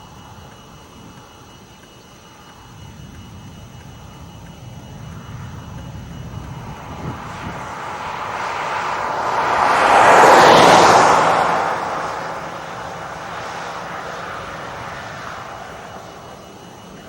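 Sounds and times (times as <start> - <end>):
vehicle passing on road: 3.4 - 17.0.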